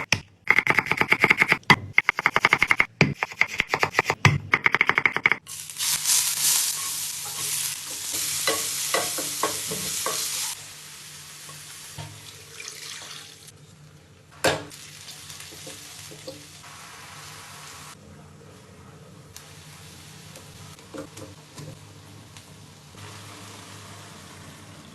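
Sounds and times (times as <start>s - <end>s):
food sizzling in a hot pan: 5.4s - 13.5s, 14.7s - 18.0s, 22.4s - 24.7s.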